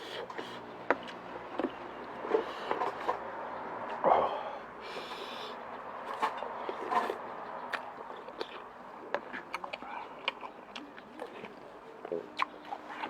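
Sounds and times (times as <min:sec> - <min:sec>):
person chewing wet mouth sounds: 0:06.6 - 0:13.0.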